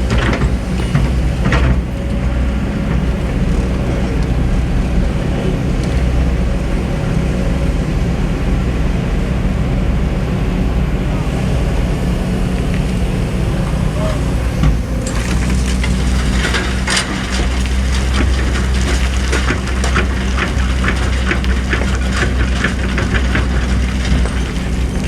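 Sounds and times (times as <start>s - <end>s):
sharp clattering and scraping: 0.0s - 9.1s, 14.2s - 25.0s
excavator diesel engine running: 0.0s - 25.0s.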